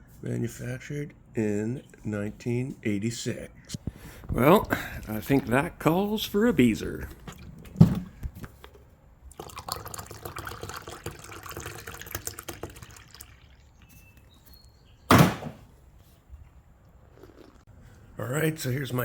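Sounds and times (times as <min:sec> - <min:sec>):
liquid pouring and fizzing: 0:09.3 - 0:14.1.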